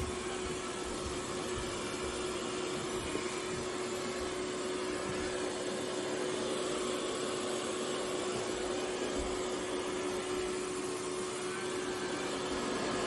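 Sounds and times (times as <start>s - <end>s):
robot vacuum whirring: 0.0s - 13.0s.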